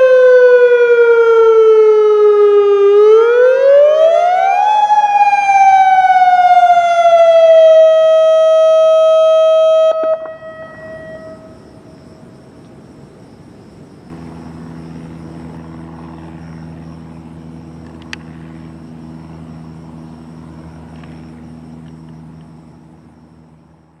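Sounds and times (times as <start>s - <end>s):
electronic warning siren wailing: 0.0s - 12.3s, 14.1s - 24.0s
steady low hum: 8.0s - 24.0s.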